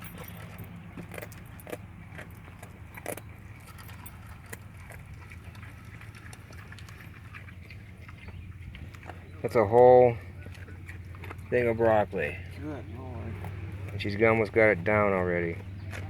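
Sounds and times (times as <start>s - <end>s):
dog crunching broccoli: 0.0s - 9.3s, 10.4s - 12.1s.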